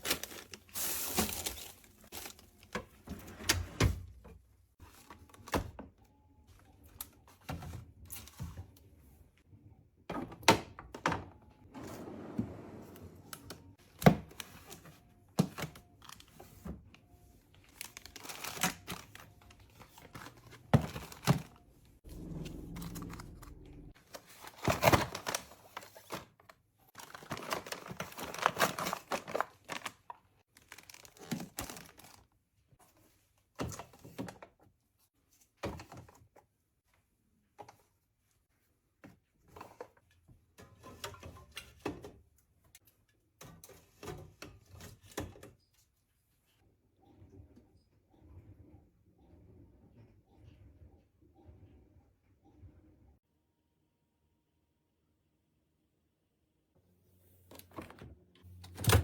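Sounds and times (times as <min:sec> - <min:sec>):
plastic packaging crinkling: 0:00.0 - 0:02.7, 0:17.7 - 0:19.3.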